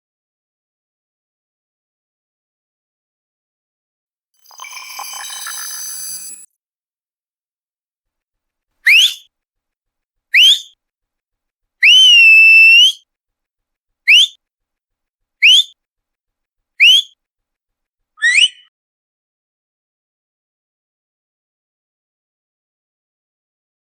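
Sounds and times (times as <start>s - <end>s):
person whistling upward slides: 8.9s - 9.2s, 10.4s - 10.7s, 11.8s - 13.0s, 14.1s - 14.3s, 15.4s - 15.7s, 16.8s - 17.1s, 18.2s - 18.7s.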